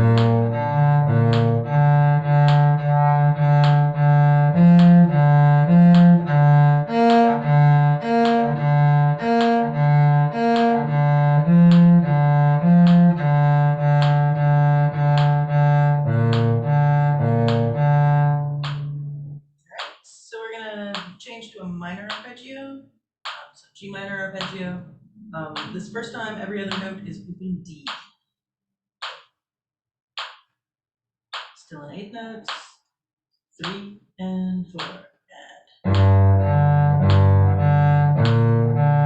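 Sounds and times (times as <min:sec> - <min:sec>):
cello bowed arpeggio: 0:00.0 - 0:19.4, 0:35.8 - 0:39.0.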